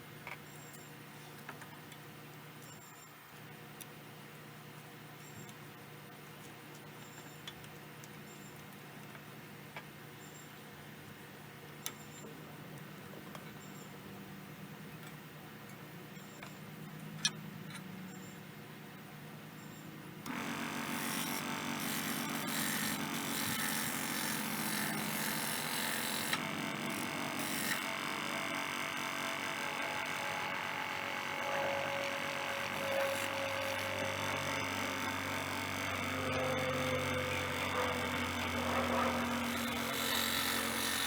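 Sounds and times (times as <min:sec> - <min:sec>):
saw blade rasping through wood: 0:20.3 - 0:41.0
scroll saw humming: 0:20.3 - 0:41.0.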